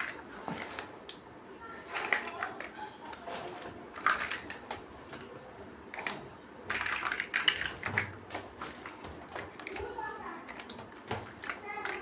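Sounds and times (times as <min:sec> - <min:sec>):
plastic bricks clicking and clattering: 0:01.9 - 0:02.8, 0:04.0 - 0:04.6, 0:05.9 - 0:08.2, 0:08.8 - 0:12.0.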